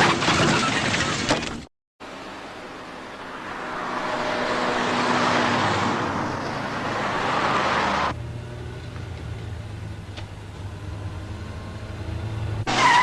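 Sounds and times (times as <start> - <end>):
car driving past: 2.1 - 9.6.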